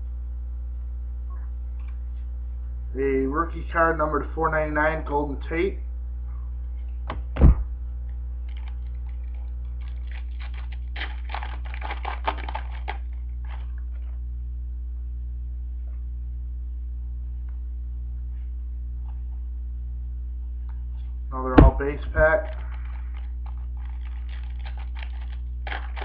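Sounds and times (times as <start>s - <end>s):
low electrical hum: 0.0s - 26.0s
foil pack crackling open: 8.5s - 13.8s, 22.5s - 26.0s.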